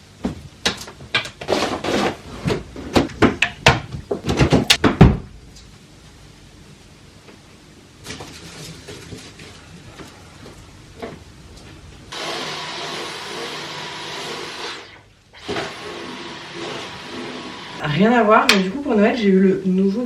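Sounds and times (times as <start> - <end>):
cordless vacuum running: 12.1 - 18.0.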